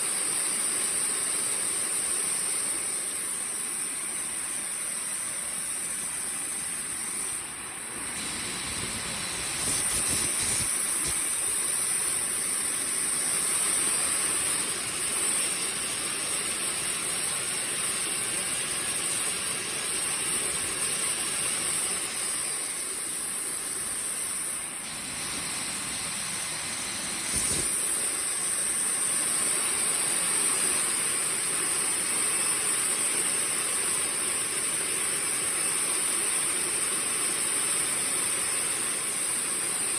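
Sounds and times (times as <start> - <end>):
turbojet engine whine and hiss: 0.0 - 39.9.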